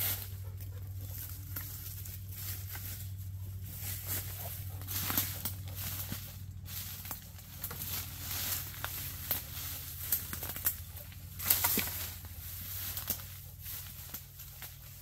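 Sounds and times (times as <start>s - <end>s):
brush rustling: 0.0s - 15.0s
twigs and branches snapping: 3.9s - 15.0s.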